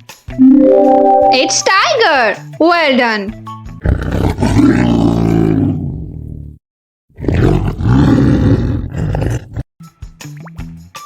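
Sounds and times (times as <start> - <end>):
lion roaring: 3.8 - 6.5, 7.2 - 9.6.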